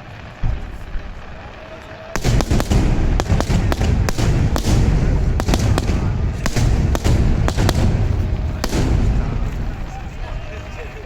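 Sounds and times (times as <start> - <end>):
deep rumble of booms: 0.4 - 1.4, 2.2 - 11.0
fireworks shells bursting: 2.2 - 11.0.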